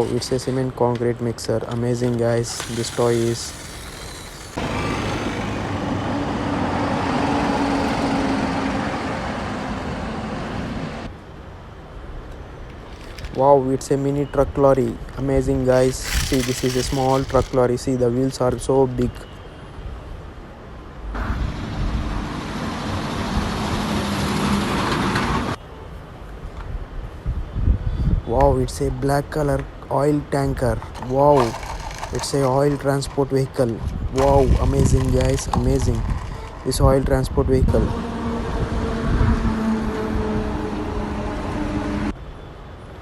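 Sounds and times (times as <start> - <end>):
road traffic noise: 0.0 - 27.2, 28.8 - 43.0
engine hum: 2.1 - 11.1, 15.6 - 18.4, 30.6 - 42.2.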